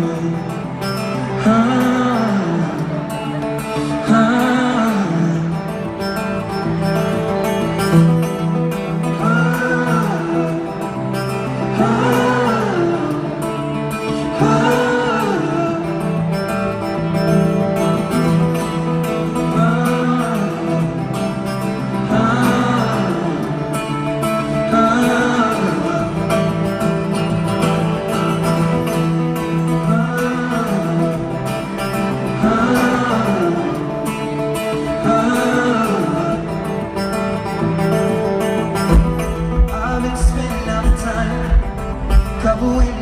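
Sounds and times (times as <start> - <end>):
acoustic guitar: 0.0 - 43.0
person singing wordless phrases: 39.6 - 43.0.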